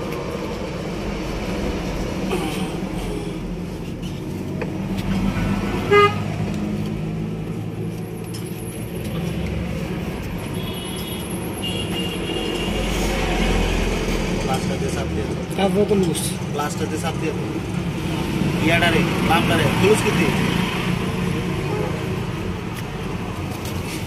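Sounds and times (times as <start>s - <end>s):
traffic rumble: 0.0s - 24.0s
vehicle horn toot: 5.9s - 6.3s, 10.6s - 12.9s.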